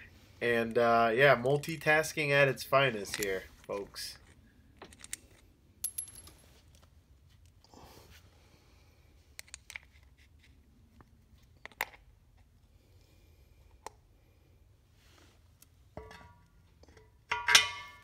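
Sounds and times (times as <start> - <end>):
small metal hardware clinking: 4.2 - 6.4, 16.0 - 18.0.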